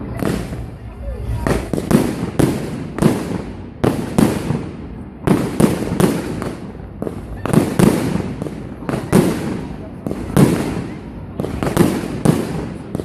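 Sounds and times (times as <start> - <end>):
fireworks bangs: 0.0 - 13.0.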